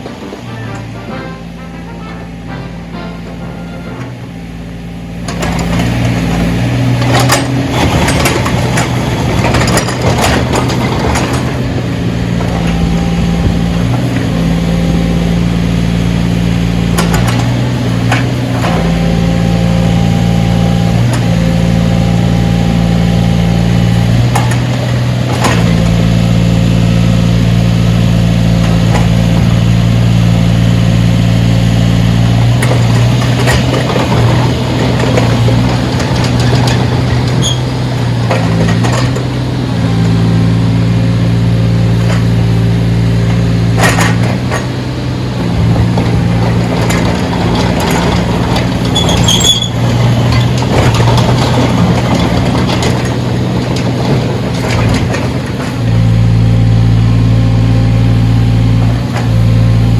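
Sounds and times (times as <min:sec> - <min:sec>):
high machine whine: 0:00.0 - 0:06.6
backhoe diesel engine running: 0:00.0 - 0:59.9.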